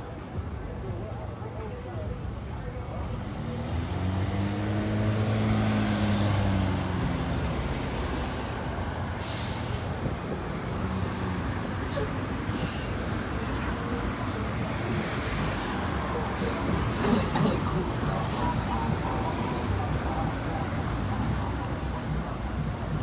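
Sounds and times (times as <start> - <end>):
street traffic noise: 0.0 - 23.0
bus engine passing: 2.3 - 23.0
air brake hisses: 9.1 - 10.0.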